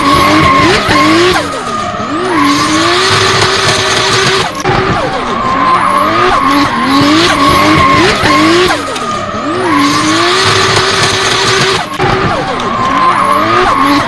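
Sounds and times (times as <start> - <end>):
race car engine revving: 0.0 - 14.0.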